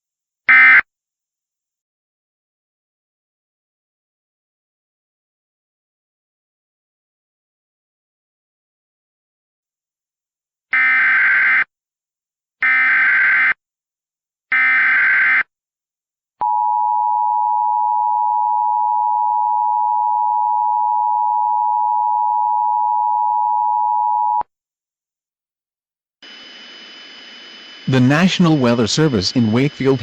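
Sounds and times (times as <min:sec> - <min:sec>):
digital data tone bursts: 0:26.2 - 0:30.0.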